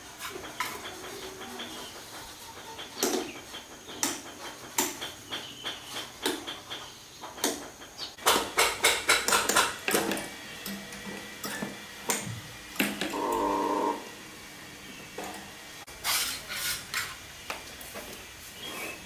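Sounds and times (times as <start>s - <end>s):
metal tools clinking and tapping: 9.8s - 11.8s.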